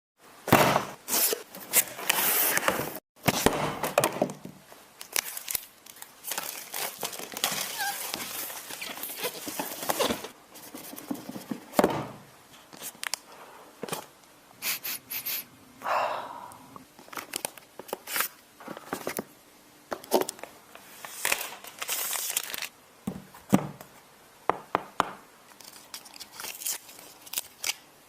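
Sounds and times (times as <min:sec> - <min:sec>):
packaging crinkling and tearing: 0:05.0 - 0:10.4, 0:17.0 - 0:19.2, 0:21.1 - 0:22.8, 0:25.5 - 0:27.9.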